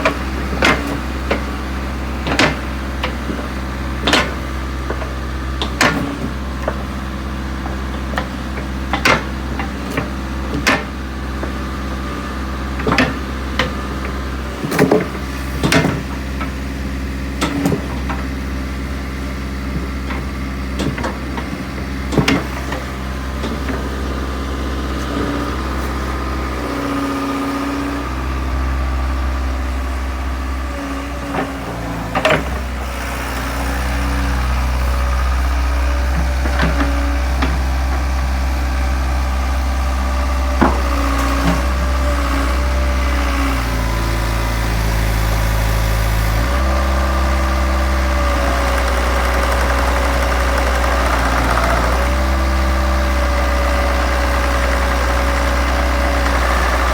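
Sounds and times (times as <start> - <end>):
diesel engine idling: 0.0 - 56.9
sharp clunks and knocks: 31.3 - 32.7.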